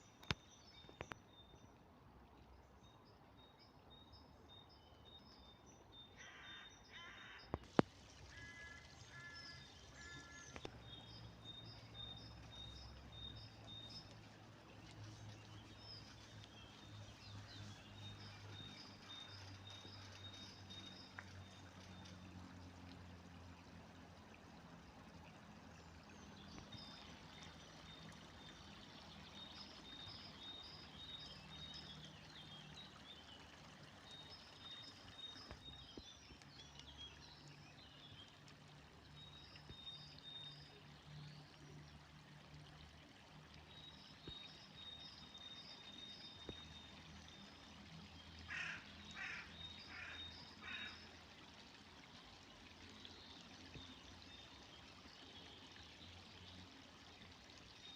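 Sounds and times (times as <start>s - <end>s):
river water flowing: 0.0s - 57.9s
crow cawing: 6.2s - 7.4s, 8.3s - 10.4s, 48.5s - 50.9s.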